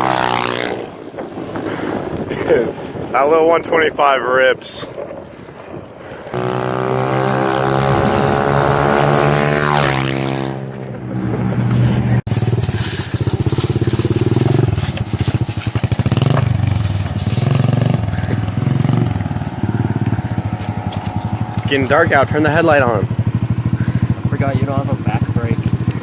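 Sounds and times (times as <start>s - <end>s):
motorbike engine revving: 0.0s - 1.0s, 6.3s - 26.0s.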